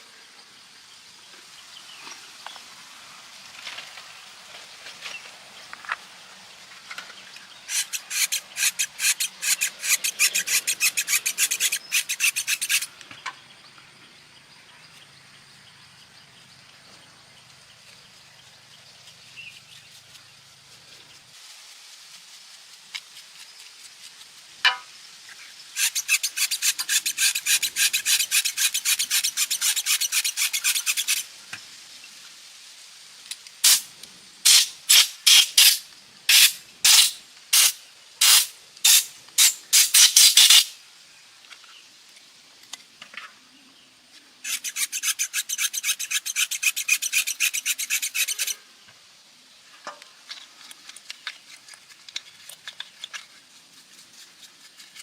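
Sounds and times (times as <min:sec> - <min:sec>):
rasping file strokes on metal: 0:07.7 - 0:12.9, 0:25.8 - 0:31.2, 0:44.5 - 0:48.6.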